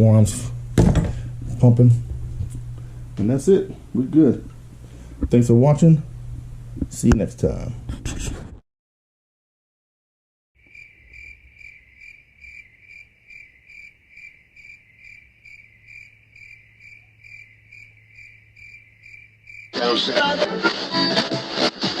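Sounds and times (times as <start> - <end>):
low steady hum: 0.0 - 8.4
cricket chirping: 10.6 - 19.8.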